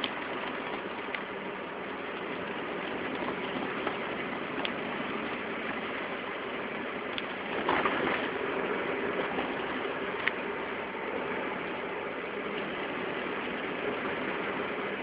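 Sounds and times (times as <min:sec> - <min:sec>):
wheel hub rushing noise: 0:00.0 - 0:15.0
rough scraping: 0:07.5 - 0:10.0.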